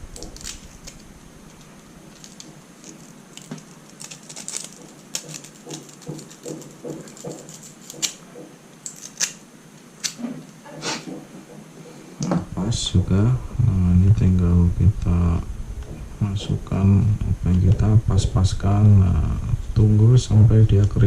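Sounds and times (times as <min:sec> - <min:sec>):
small metal tools clicking and scraping: 0:02.1 - 0:08.2, 0:08.8 - 0:09.4.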